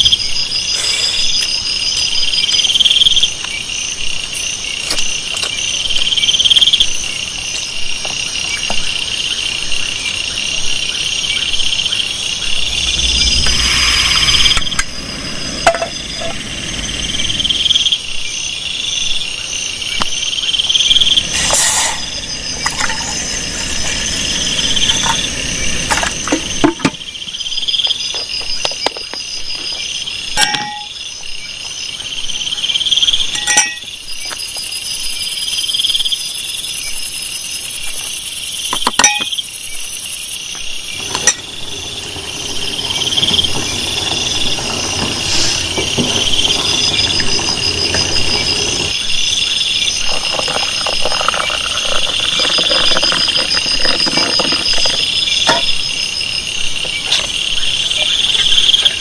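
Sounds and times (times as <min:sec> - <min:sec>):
insects trilling: 0:00.0 - 0:59.0
high steady hiss: 0:12.4 - 0:17.6.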